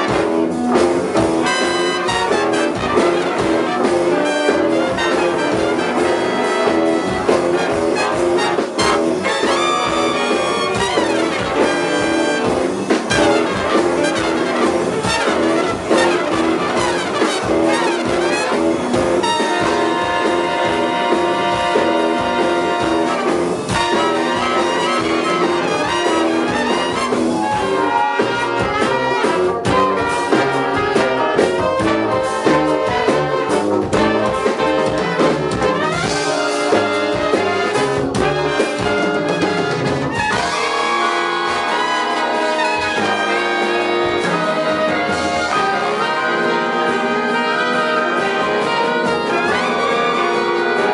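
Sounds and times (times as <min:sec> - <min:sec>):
big band playing jazz: 0:00.0 - 0:50.9.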